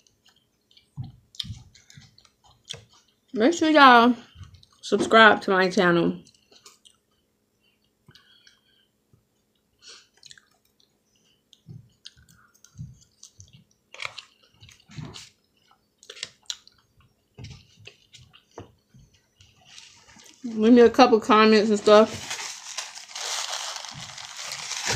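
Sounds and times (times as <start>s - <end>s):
chewing salad: 0.0s - 3.4s, 4.3s - 4.9s, 6.2s - 8.6s, 9.4s - 20.5s.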